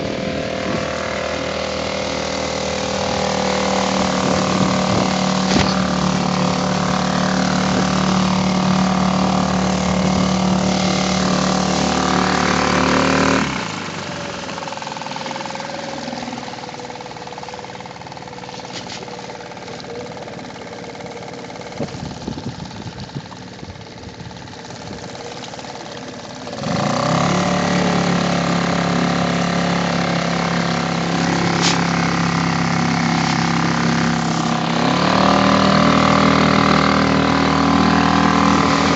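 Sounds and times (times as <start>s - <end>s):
outboard motor running: 0.0s - 38.9s.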